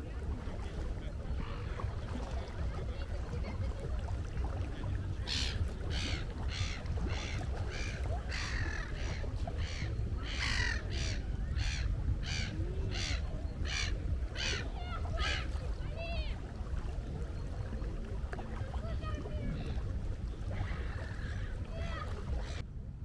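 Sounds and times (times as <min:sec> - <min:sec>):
steady low rumble: 0:00.0 - 0:23.0
gull calling: 0:05.1 - 0:16.4, 0:18.7 - 0:22.6.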